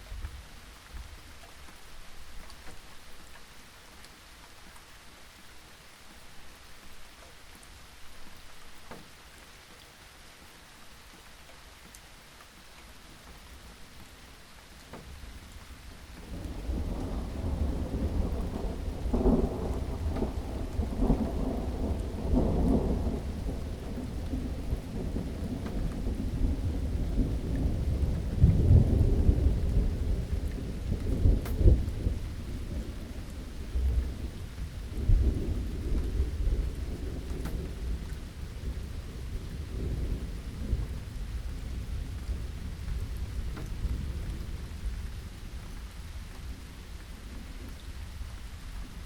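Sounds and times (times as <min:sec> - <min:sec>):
steady rain: 0:00.0 - 0:49.0
deep thunder rolling: 0:16.3 - 0:44.9.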